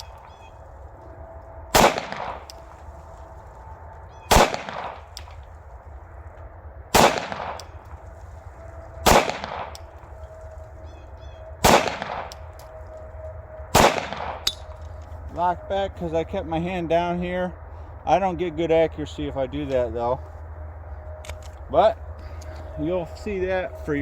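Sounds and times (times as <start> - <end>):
pistol shots with echo: 1.7 - 2.6, 4.2 - 5.4, 6.9 - 7.9, 9.0 - 10.0, 11.6 - 12.5, 13.7 - 14.7.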